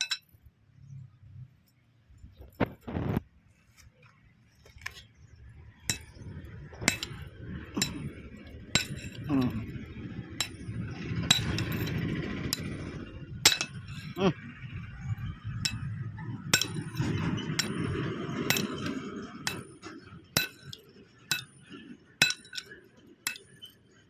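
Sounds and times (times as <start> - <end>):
metal-on-metal clinks: 0.0 - 0.3, 5.9 - 14.2, 14.9 - 24.0
low rumble: 5.3 - 20.8.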